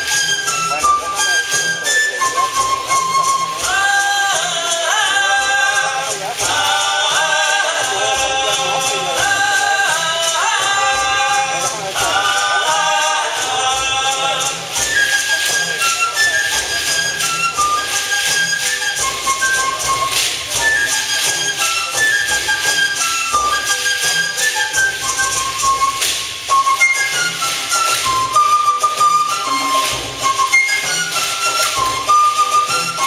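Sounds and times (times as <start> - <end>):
high flute melody: 0.0 - 13.5, 14.3 - 33.0
shaken rattle: 0.0 - 33.0
tambourine-like percussion: 0.0 - 33.0
voices singing: 3.0 - 16.1, 24.0 - 33.0.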